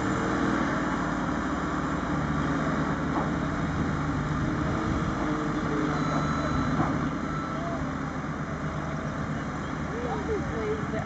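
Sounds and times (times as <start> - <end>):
construction machinery engine running: 0.0 - 11.0.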